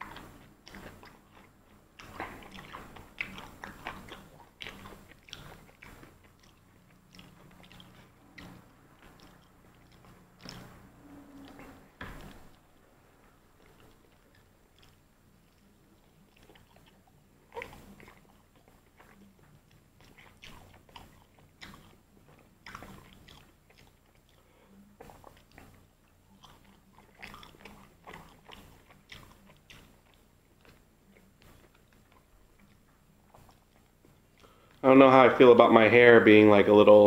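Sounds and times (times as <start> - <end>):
person chewing fried chicken: 0.0 - 34.9.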